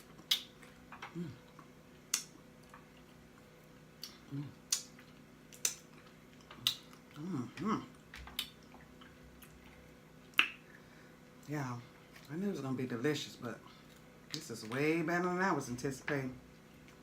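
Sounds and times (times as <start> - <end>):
wet lip smacks: 0.1 - 2.8, 4.0 - 7.1, 10.3 - 10.7
person humming mm: 1.0 - 1.5, 4.0 - 4.6, 7.1 - 7.9.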